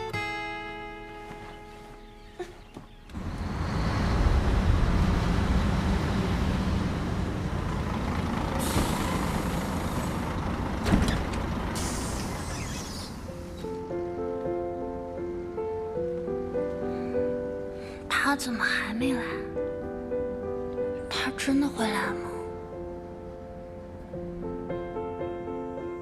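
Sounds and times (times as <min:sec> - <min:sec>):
heavy vehicle engine rumble: 0:01.4 - 0:13.9
high hissing bursts: 0:11.8 - 0:13.2.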